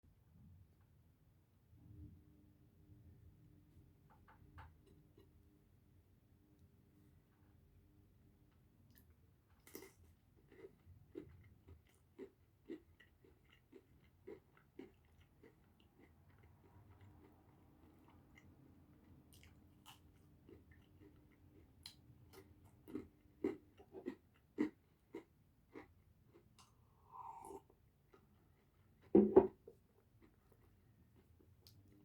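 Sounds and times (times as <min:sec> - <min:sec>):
person chewing pizza: 0:08.9 - 0:32.0.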